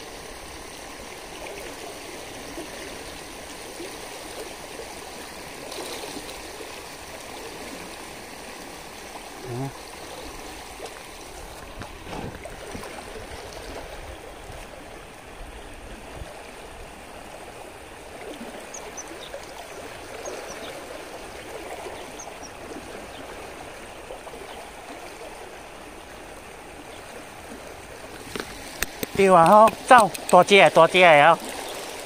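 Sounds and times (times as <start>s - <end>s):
sea water sloshing on rocks: 10.2s - 14.7s, 27.1s - 32.0s
small clicks and ticks: 28.2s - 30.8s.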